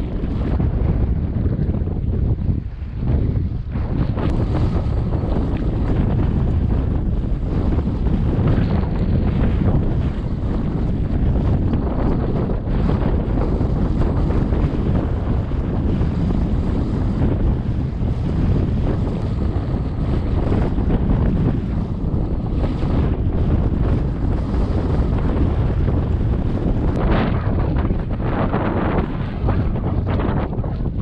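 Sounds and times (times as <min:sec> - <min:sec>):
water splashing around kayak: 0:00.0 - 0:31.0
wind buffeting microphone: 0:00.0 - 0:31.0.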